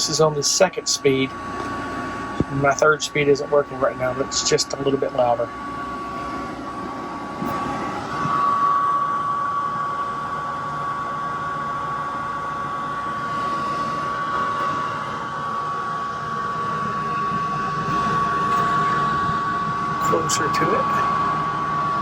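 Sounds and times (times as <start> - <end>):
air conditioner blower rushing air: 0.0 - 22.0
thin steady whine: 0.0 - 22.0.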